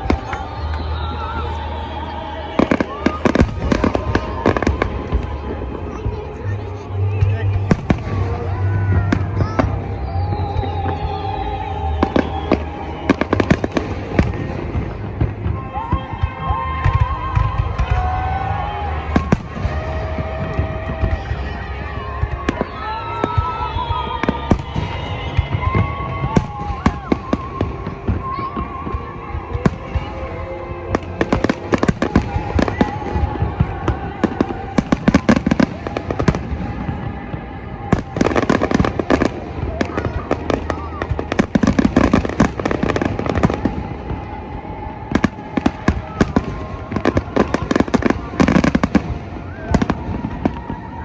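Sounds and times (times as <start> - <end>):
fireworks bangs and pops: 0.0 - 51.0
fireworks whistling: 0.0 - 51.0
faint thin whistle: 9.7 - 13.4.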